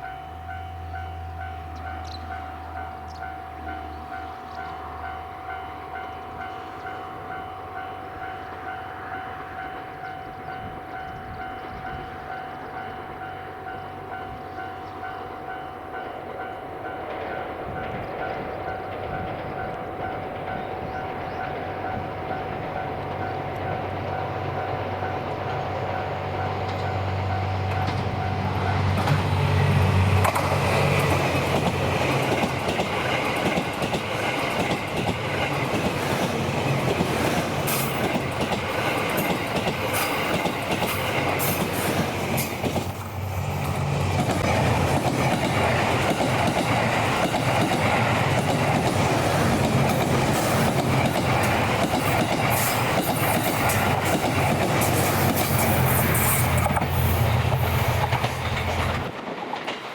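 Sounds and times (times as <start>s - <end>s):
train wheels clicking over rail joints: 0.9s - 59.9s
diesel engines droning: 22.0s - 51.8s.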